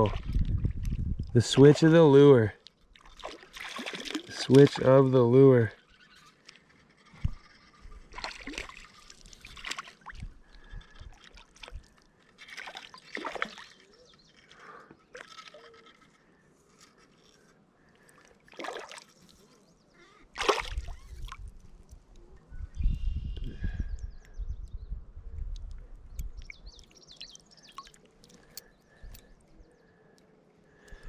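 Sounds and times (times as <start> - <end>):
water splashing and sloshing: 0.0 - 5.2, 6.1 - 16.1, 17.9 - 19.5, 20.2 - 22.0.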